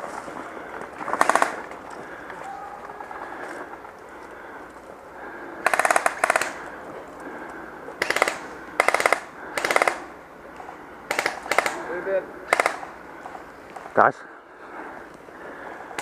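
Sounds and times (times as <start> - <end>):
airsoft gun bursts: 1.1 - 1.6, 5.6 - 6.6, 8.0 - 10.1, 11.1 - 12.9.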